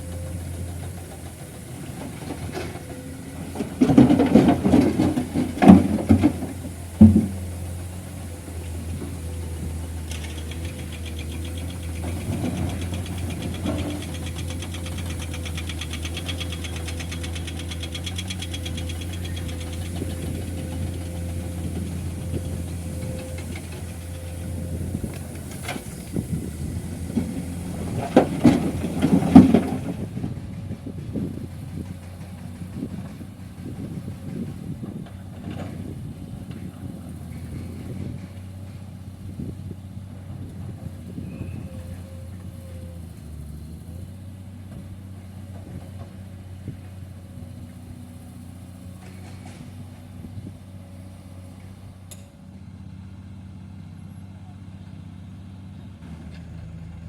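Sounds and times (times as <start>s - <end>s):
diesel engines running: 0.0s - 57.0s
loud clattering and banging: 3.5s - 7.4s.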